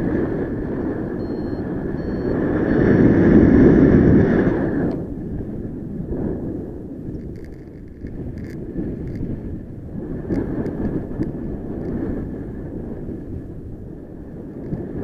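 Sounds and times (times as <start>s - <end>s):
wind rushing over microphone: 0.0s - 15.0s
faint short high beeps: 1.2s - 2.9s.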